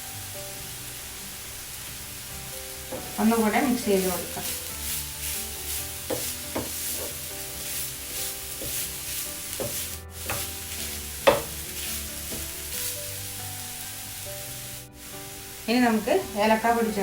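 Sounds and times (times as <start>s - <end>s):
food sizzling in a pan: 0.0s - 17.0s
spoon scraping and knocking a pan: 2.8s - 13.2s.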